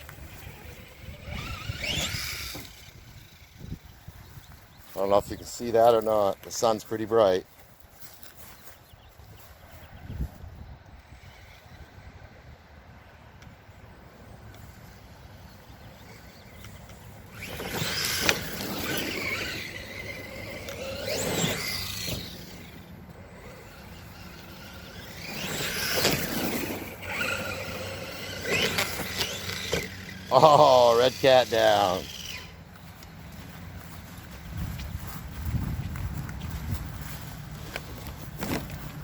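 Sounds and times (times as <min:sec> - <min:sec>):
tyres tearing over dirt: 0:00.0 - 0:04.1, 0:16.2 - 0:39.0
electric motor whining: 0:00.0 - 0:04.9, 0:15.9 - 0:38.9.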